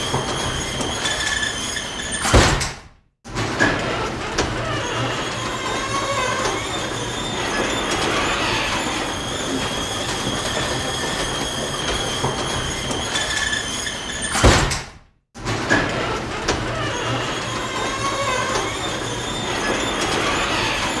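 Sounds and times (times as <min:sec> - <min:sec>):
garage door running with whine: 0:00.0 - 0:21.0
garage door thump: 0:02.2 - 0:02.9, 0:14.3 - 0:15.0.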